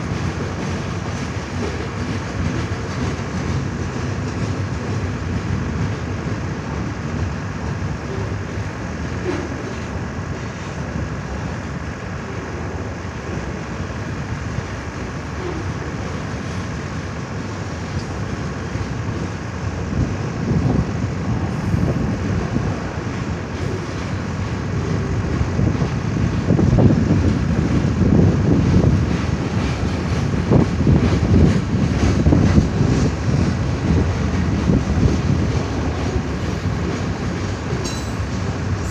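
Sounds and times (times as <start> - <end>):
freight train wheels rumbling: 0.0 - 38.9
wind noise on microphone: 13.4 - 38.9.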